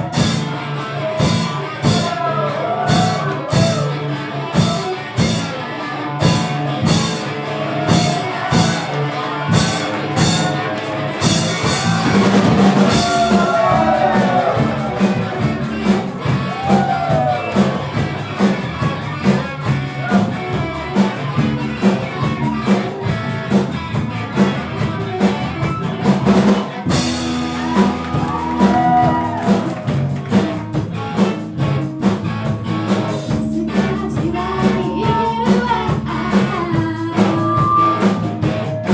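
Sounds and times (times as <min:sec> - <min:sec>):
drum kit beat: 0:00.0 - 0:38.9
electric guitar: 0:00.0 - 0:38.9
person singing: 0:33.1 - 0:38.9.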